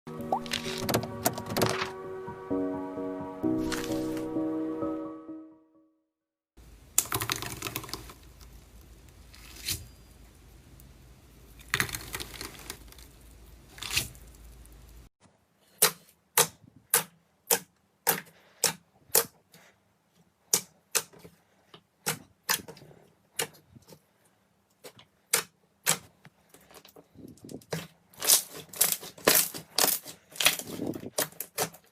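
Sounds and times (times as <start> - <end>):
slime squishing: 11.4 - 15.0, 24.8 - 31.9.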